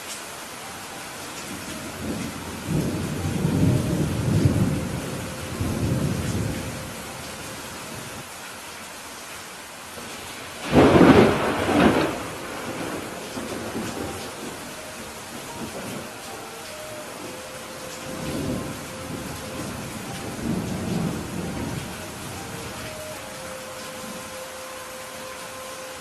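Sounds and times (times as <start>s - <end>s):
rain hissing: 0.0s - 26.0s
thunder rumbling: 1.5s - 8.2s, 10.1s - 24.4s
sharp thunderclap: 10.6s - 14.4s.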